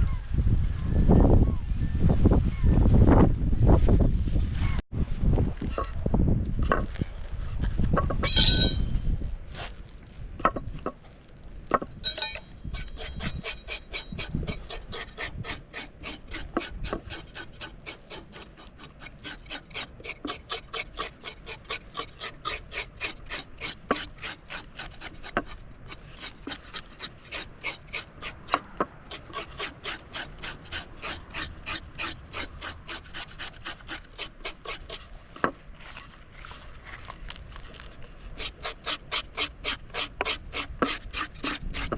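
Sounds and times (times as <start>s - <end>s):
knife scraping fish scales: 12.1s - 41.9s.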